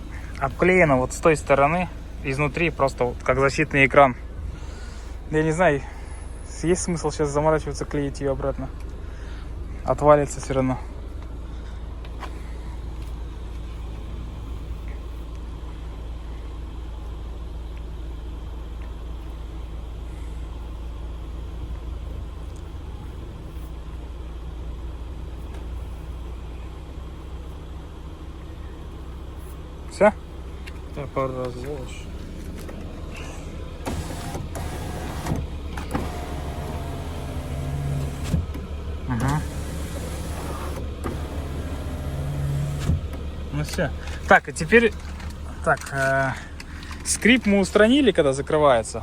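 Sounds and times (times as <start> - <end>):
low mechanical hum: 0.0 - 49.0
electric window motor running: 31.2 - 45.6
window motor clicks: 33.8 - 45.6.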